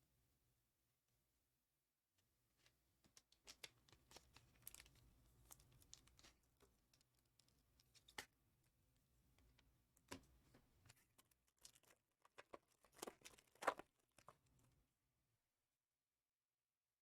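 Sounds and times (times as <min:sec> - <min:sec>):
trading cards clicking and rustling: 0:03.1 - 0:08.3.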